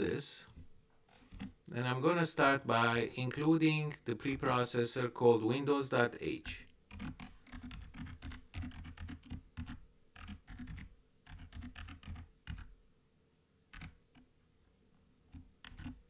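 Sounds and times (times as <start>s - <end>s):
typing on computer keyboard: 6.9s - 12.7s, 13.7s - 14.0s, 15.3s - 16.0s.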